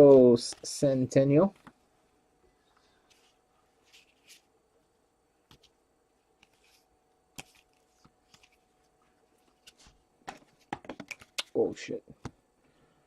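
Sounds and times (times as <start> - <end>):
cards tapping and rustling: 7.4 - 8.6, 9.5 - 11.6.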